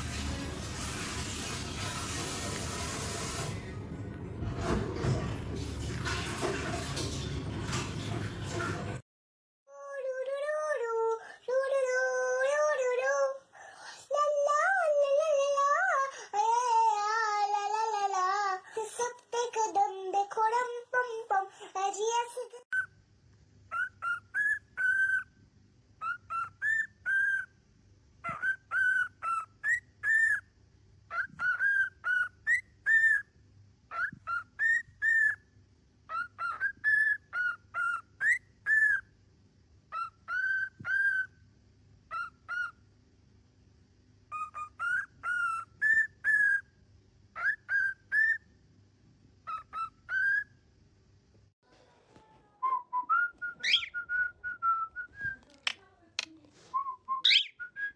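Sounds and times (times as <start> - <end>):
parrot whistling: 23.7 - 25.3, 26.0 - 27.5, 28.3 - 30.5, 31.1 - 33.3, 33.9 - 35.4, 36.1 - 39.1, 39.9 - 41.4, 42.1 - 42.8, 44.3 - 46.7, 47.4 - 48.5, 49.5 - 50.5, 52.7 - 55.4, 56.8 - 57.9.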